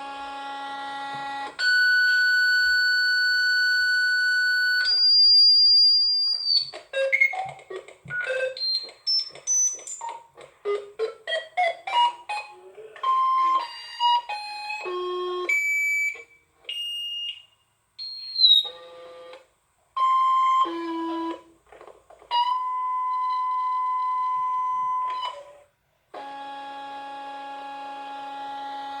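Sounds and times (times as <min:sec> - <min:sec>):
short electronic beeps: 0:06.4 - 0:10.2, 0:18.0 - 0:18.8.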